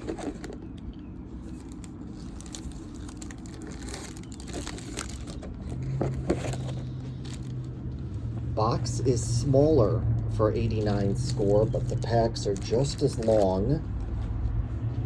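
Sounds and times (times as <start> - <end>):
plastic wrapping crinkling: 0.0 - 7.7, 10.7 - 14.2
low steady hum: 0.0 - 15.0.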